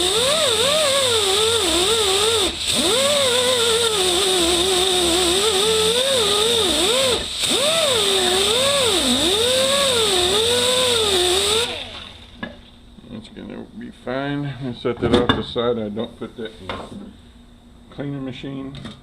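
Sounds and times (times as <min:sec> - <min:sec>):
die grinder running: 0:00.0 - 0:12.4.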